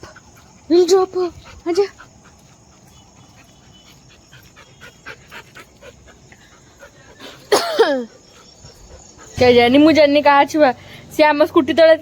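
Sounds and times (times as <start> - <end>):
dog panting and snuffling: 0.0 - 7.5, 8.1 - 9.6.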